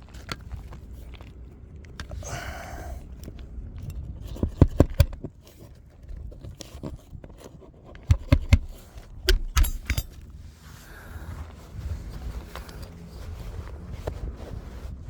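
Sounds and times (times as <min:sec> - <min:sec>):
hammer driving nails into shingles: 0:08.0 - 0:10.2.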